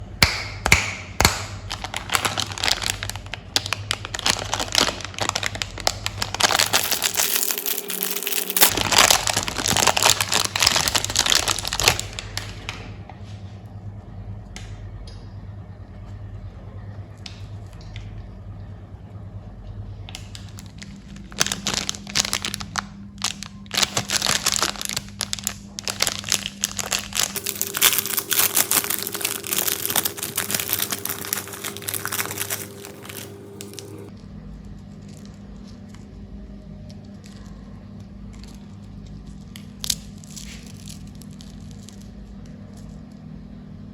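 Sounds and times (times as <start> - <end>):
candy wrappers crinkling: 1.2 - 12.7, 20.2 - 34.1, 36.9 - 43.2
faint low hum: 1.5 - 43.9.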